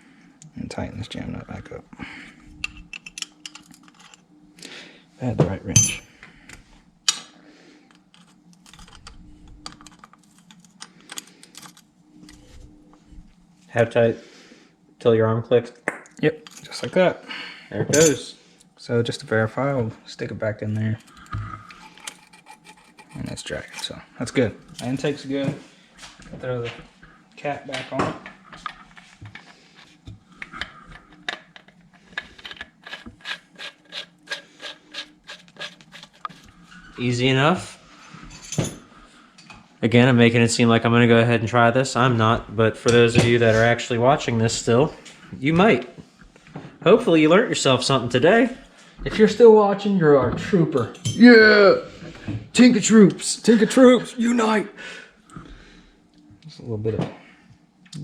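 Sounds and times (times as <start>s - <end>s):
cap threads rasping: 21.0s - 24.0s, 29.0s - 36.8s.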